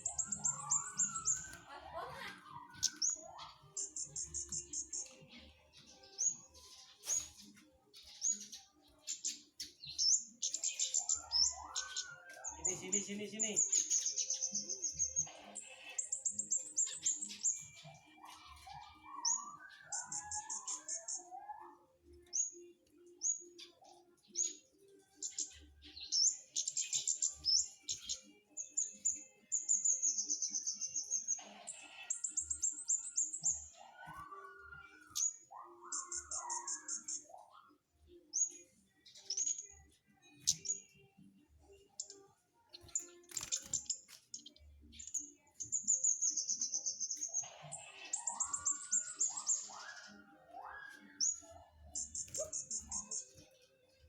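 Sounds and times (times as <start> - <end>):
bird chirping and trilling: 0.0 - 54.0.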